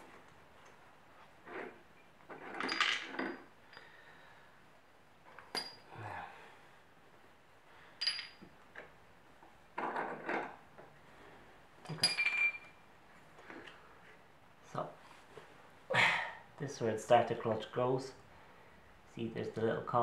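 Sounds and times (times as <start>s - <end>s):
metal tools clinking and knocking: 2.3s - 3.9s, 5.4s - 5.9s, 8.0s - 8.5s, 11.8s - 12.8s.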